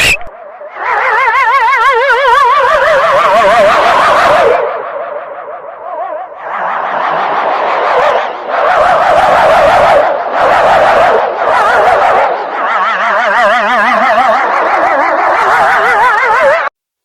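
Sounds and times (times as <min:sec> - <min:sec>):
distorted warbling alarm tones: 0:00.0 - 0:01.4.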